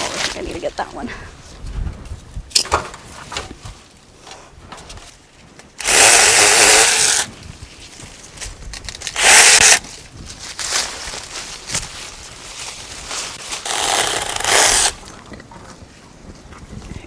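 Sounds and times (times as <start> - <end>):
cordless mini chainsaw running: 5.8 - 7.3, 9.2 - 9.8, 13.6 - 15.0.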